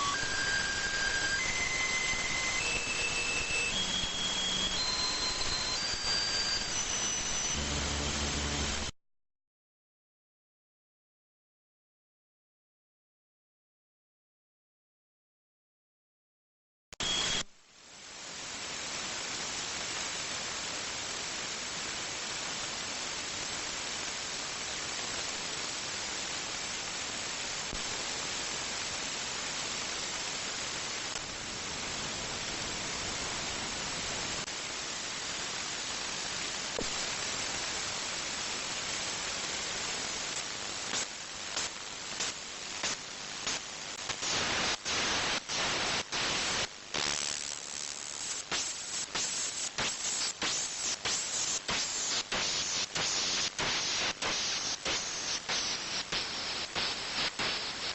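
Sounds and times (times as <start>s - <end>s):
radio static hiss: 0.0s - 8.9s, 17.0s - 57.9s.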